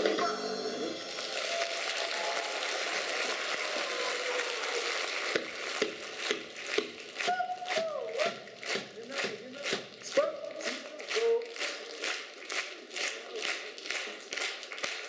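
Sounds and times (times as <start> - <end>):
audience applauding: 0.9 - 15.0.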